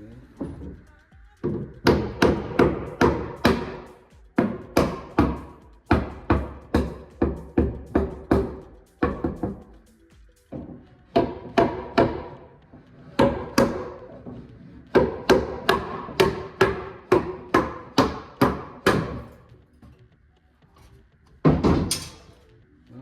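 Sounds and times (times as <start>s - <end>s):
hammer striking wood: 1.4s - 9.7s, 10.5s - 12.5s, 13.2s - 20.0s, 21.4s - 22.2s.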